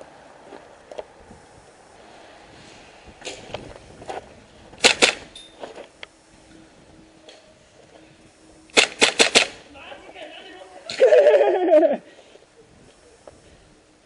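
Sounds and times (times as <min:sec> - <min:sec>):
airsoft gun shots: 0:04.8 - 0:05.3, 0:08.7 - 0:09.6.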